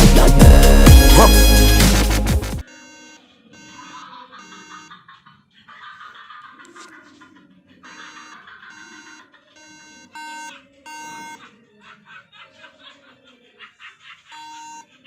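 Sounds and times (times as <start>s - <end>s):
computer startup error beeps: 0.0s - 2.7s.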